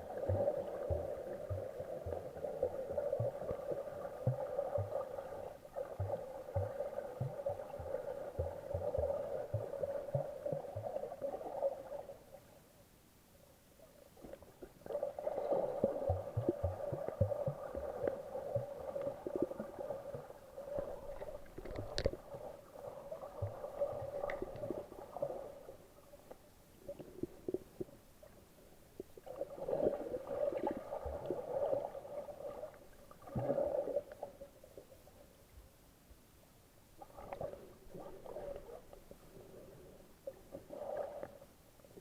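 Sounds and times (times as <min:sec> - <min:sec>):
underwater water sloshing: 0:00.0 - 0:12.5, 0:14.2 - 0:35.2, 0:37.0 - 0:42.0
small underwater clicks: 0:20.8 - 0:22.4, 0:23.4 - 0:24.9.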